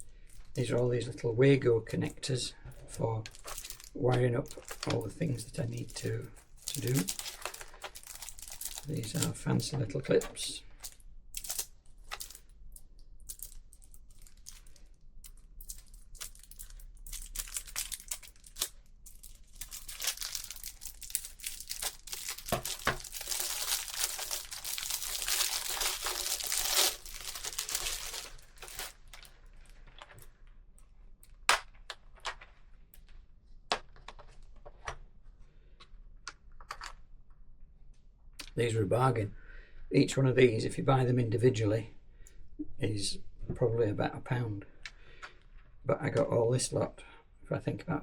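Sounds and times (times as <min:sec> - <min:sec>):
packaging crinkling and tearing: 0:03.3 - 0:09.5, 0:10.8 - 0:12.4, 0:13.3 - 0:30.3.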